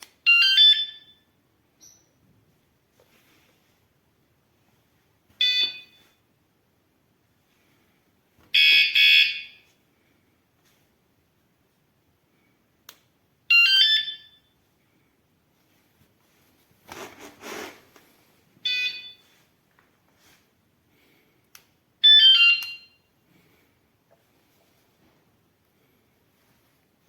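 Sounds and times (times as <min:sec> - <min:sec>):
bike alarm electronic chirps: 0:00.2 - 0:02.2, 0:05.4 - 0:06.2, 0:08.5 - 0:09.7, 0:13.5 - 0:14.6, 0:18.6 - 0:19.4, 0:22.0 - 0:23.2.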